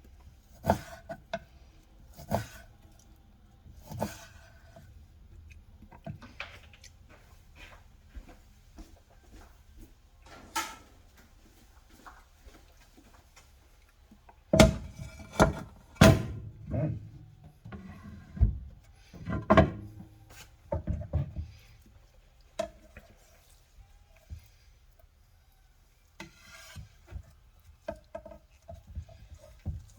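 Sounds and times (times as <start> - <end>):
kitchen knocks and clinks: 10.3 - 11.0.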